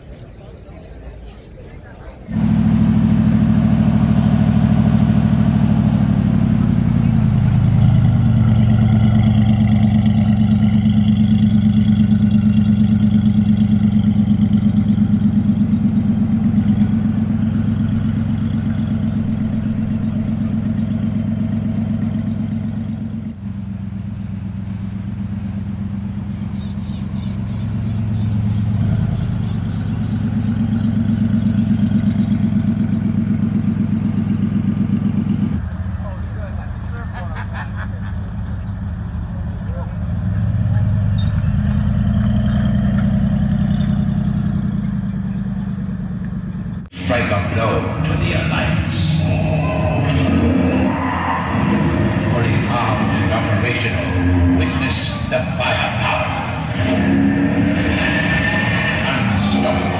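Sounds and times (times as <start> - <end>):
car engine idling: 0.0 - 59.9.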